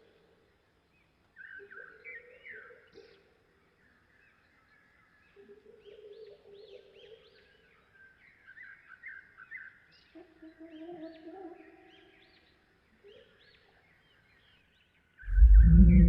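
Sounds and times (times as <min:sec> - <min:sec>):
low wavering drawn-out call: 0:15.3 - 0:16.0.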